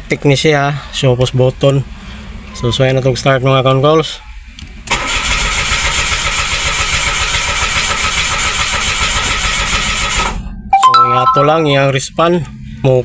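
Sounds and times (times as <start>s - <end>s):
starter motor cranking engine: 4.9s - 10.4s.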